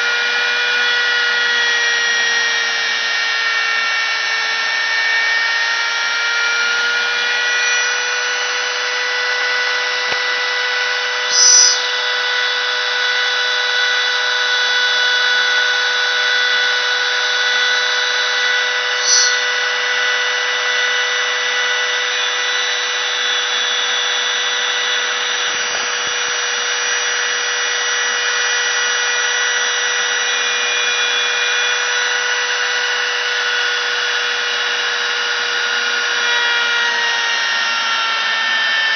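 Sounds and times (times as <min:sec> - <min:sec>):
router motor whine: 0:00.0 - 0:38.9
high-pitched squeals: 0:07.2 - 0:14.1, 0:16.3 - 0:32.9.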